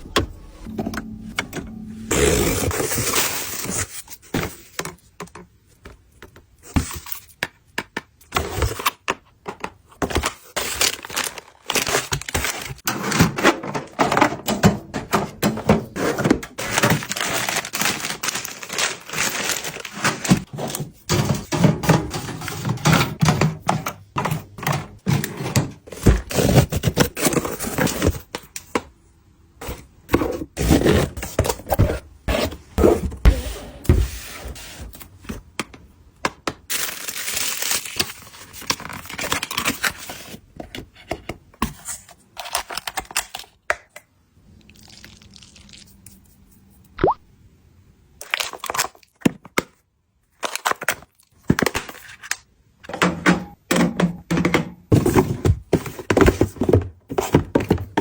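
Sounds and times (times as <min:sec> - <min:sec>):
packaging being handled: 0:16.1 - 0:20.8
packaging crinkling: 0:16.6 - 0:20.5.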